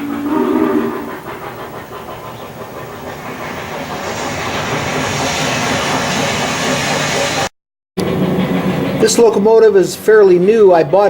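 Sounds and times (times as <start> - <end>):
rushing hiss: 0.0 - 7.5
model train rolling rumble: 0.0 - 11.0.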